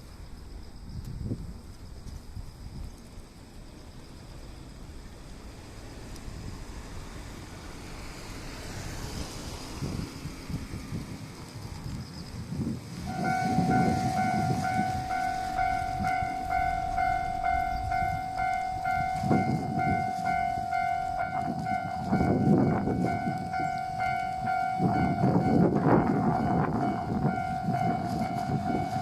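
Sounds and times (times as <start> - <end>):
level crossing warning bell: 13.0 - 29.0.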